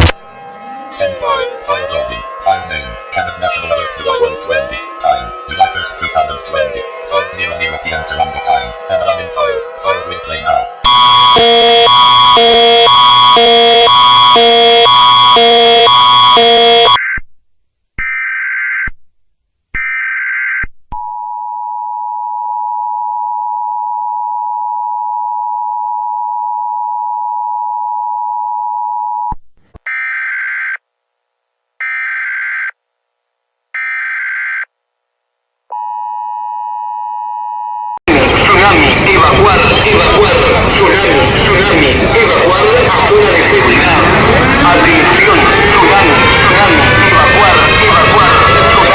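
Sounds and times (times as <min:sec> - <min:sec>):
pulsing electronic alarm: 0:00.0 - 0:17.0, 0:38.1 - 0:48.9
two-tone attention signal: 0:07.9 - 0:17.0
data bursts: 0:10.8 - 0:17.0.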